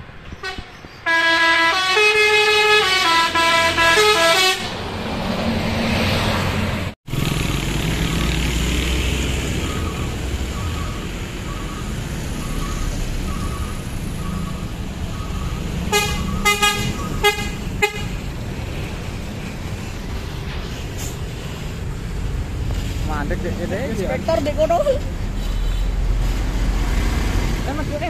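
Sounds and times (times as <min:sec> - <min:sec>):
large vehicle engine rumbling: 0:00.0 - 0:28.0
horn short blasts: 0:00.4 - 0:04.8, 0:15.9 - 0:18.2.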